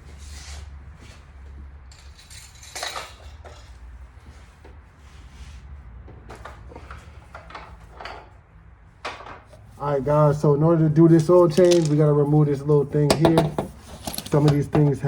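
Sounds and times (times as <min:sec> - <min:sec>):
tools and parts clinking: 0:01.9 - 0:03.9, 0:06.3 - 0:08.4, 0:11.1 - 0:15.0.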